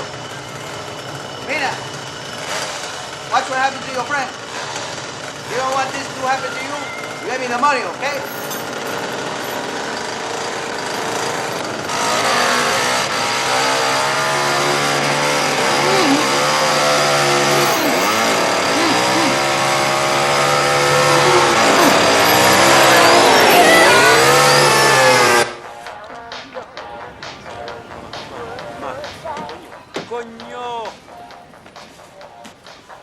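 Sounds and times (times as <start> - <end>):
chainsaw revving: 1.7 - 6.4, 7.5 - 25.5
high wavering screams: 13.5 - 25.4.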